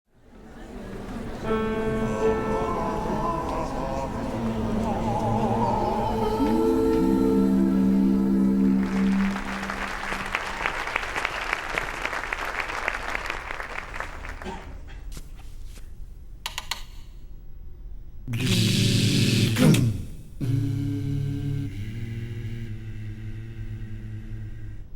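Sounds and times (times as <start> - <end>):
held musical chord: 1.4 - 10.2
music: 1.4 - 10.2.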